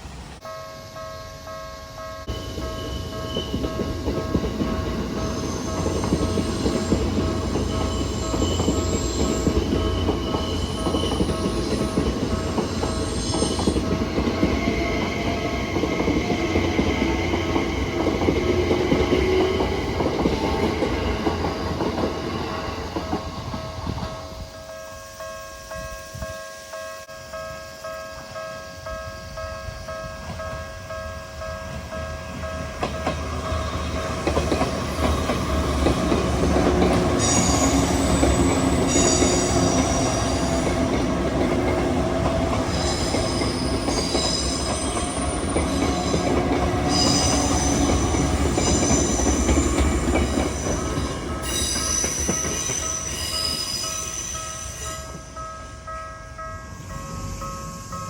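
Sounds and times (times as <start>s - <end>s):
train rumbling over crossing: 0.0s - 58.0s
high-pitched wheel squeal: 46.9s - 55.2s.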